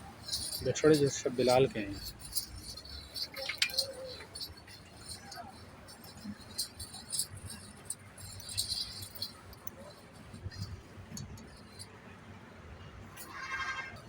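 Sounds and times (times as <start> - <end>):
low background rumble: 0.0 - 13.2
light metallic jingles: 0.0 - 14.0.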